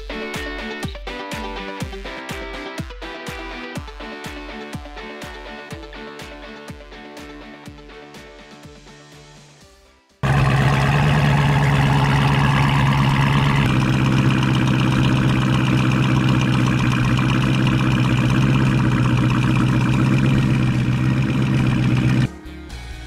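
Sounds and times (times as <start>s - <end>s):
car engine running: 10.2s - 22.3s.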